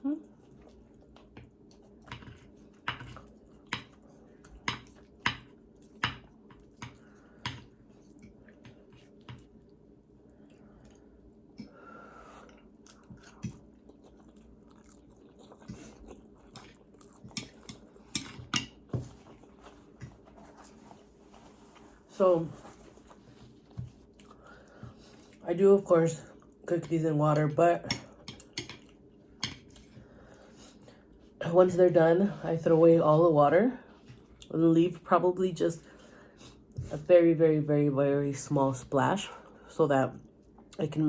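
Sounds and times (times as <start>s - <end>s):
close chewing of noodles: 0.0s - 25.4s.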